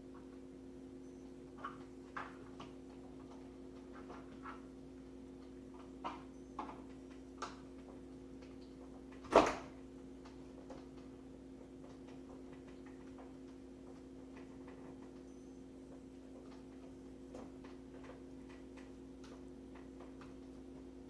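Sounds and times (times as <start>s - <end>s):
steady hum: 0.0s - 21.0s.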